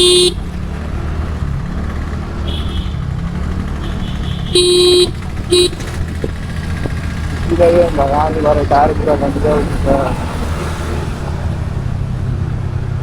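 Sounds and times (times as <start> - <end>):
vehicle horn beeping: 0.0 - 0.7, 2.4 - 11.0
low rumble of traffic ride: 0.0 - 13.0.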